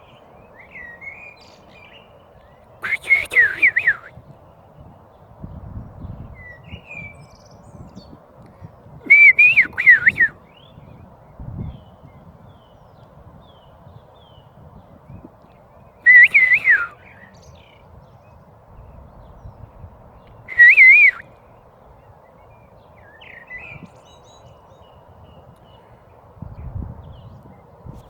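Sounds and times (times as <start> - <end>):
faint bird chirps: 0.0 - 4.2
warbling whistled phrases: 2.8 - 4.1, 9.1 - 10.4, 16.1 - 17.0, 20.5 - 21.2.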